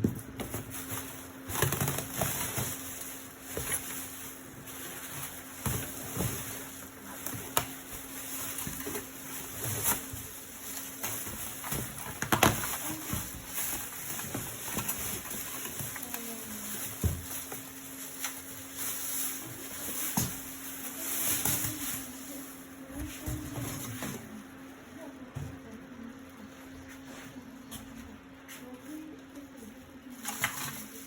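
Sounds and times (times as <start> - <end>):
packaging rustling: 0.1 - 23.9.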